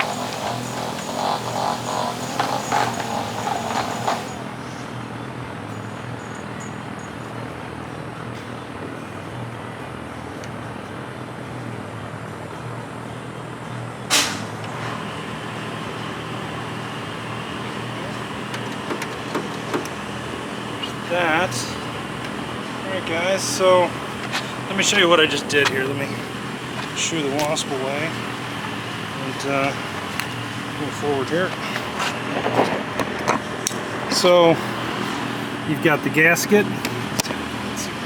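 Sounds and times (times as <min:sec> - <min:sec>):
workshop hum and hiss: 0:00.0 - 0:38.0.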